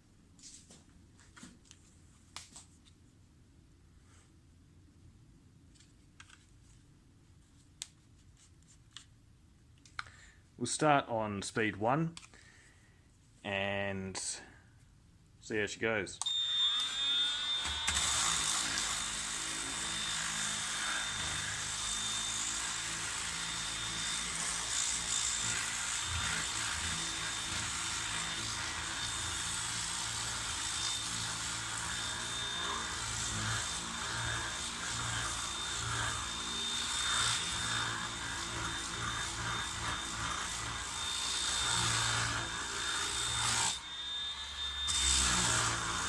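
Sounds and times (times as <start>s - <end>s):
orbital sander whine: 16.2s - 46.0s.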